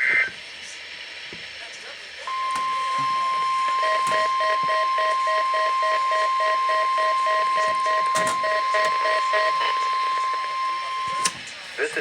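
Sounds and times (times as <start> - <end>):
steady high warning tone: 2.2 - 11.5
rapid lower beeps: 2.3 - 11.3.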